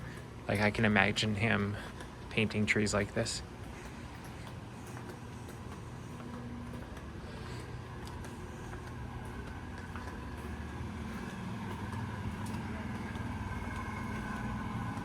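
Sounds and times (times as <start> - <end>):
vehicle engine running: 3.2 - 15.0.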